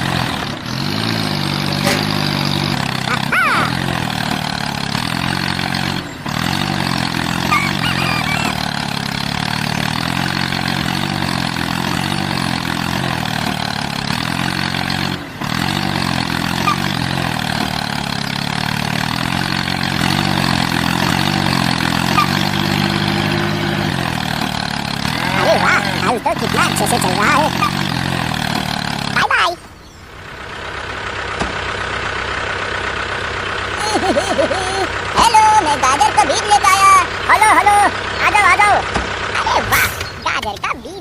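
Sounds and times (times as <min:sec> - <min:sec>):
vehicle engine idling: 0:00.0 - 0:41.0.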